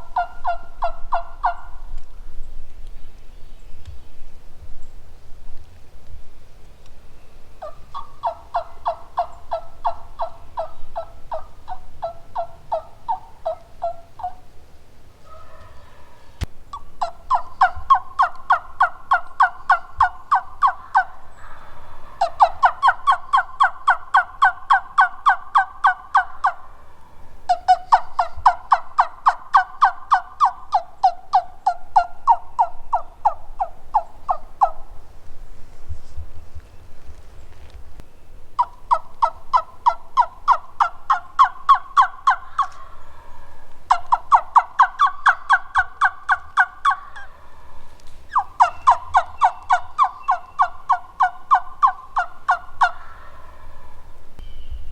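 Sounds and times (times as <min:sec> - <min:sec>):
turkey yelping: 0:00.0 - 0:01.8, 0:07.6 - 0:14.5, 0:15.2 - 0:26.9, 0:27.5 - 0:34.9, 0:38.6 - 0:54.5.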